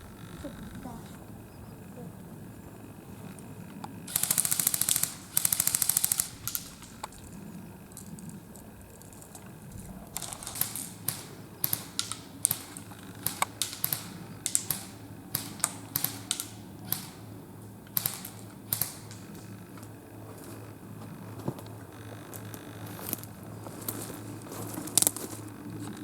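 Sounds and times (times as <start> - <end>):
airsoft guns firing: 0.0 - 20.1, 24.8 - 25.4.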